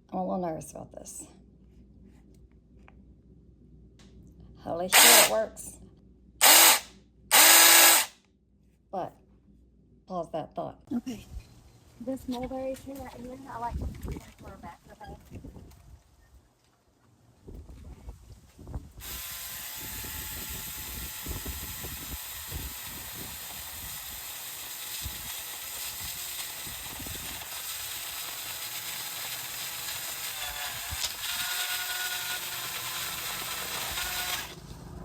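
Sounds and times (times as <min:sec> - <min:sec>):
mini chainsaw motor whine: 0:05.0 - 0:05.4, 0:06.4 - 0:08.1, 0:19.0 - 0:34.6.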